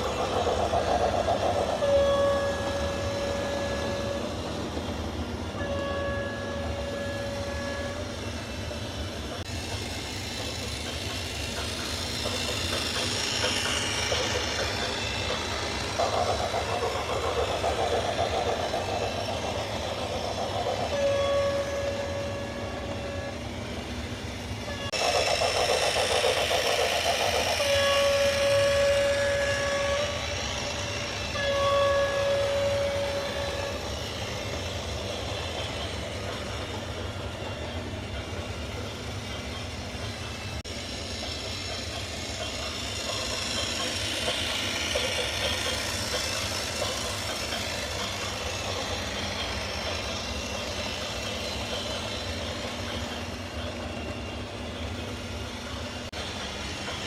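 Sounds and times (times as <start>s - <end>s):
vehicle horn blasts: 5.6s - 8.0s.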